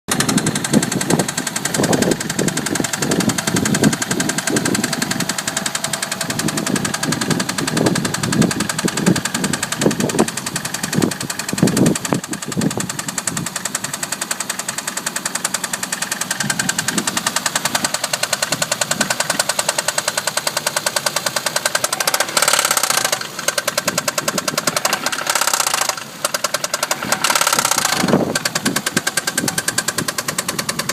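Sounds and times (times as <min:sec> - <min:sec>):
car engine knocking: 0:00.1 - 0:30.9.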